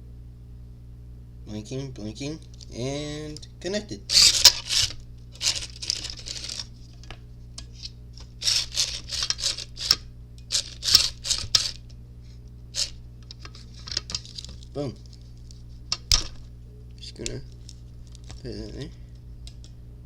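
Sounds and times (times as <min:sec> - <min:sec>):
rustling and scraping of plastic parts: 0:04.1 - 0:19.0.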